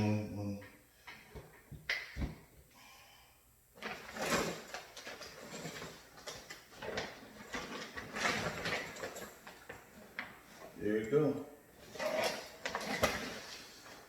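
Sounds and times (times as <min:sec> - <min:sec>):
scraping and rubbing: 0:11.8 - 0:14.0.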